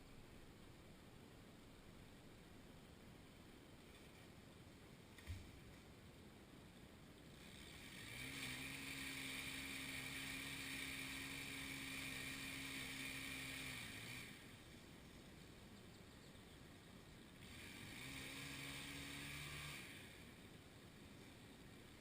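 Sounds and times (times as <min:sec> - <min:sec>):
motor running: 0:07.4 - 0:14.7, 0:17.2 - 0:20.5.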